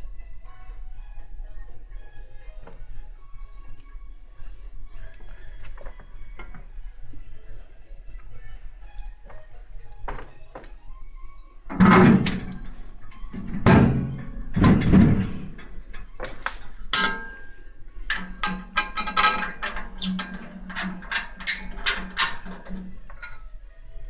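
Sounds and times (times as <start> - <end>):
heavy metal clunks ringing: 11.7 - 23.4
small metallic clicks and rattles: 11.7 - 23.5.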